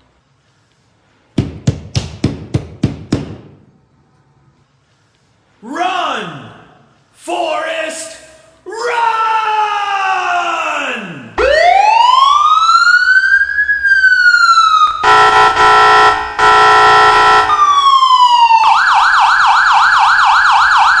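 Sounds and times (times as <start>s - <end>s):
car alarm siren: 11.4s - 21.0s.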